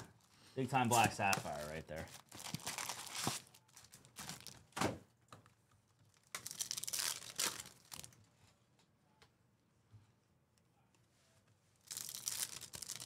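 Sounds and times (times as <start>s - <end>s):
foil wrappers crinkling and tearing: 0.8s - 4.7s, 6.0s - 8.2s, 11.8s - 13.0s.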